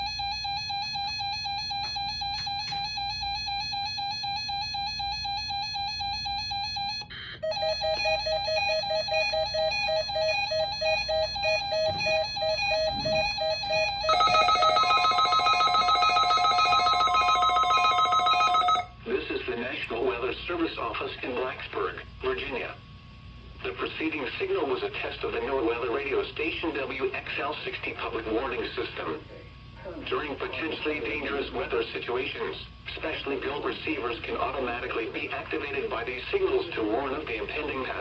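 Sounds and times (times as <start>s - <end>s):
steady high tone: 7.4s - 18.9s
pulsing warbling electronic tones: 7.5s - 14.5s.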